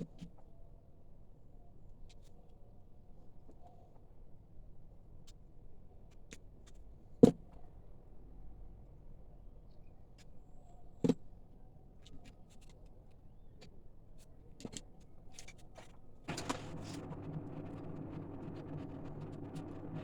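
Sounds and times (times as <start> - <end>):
cordless drill motor running: 16.3 - 20.0.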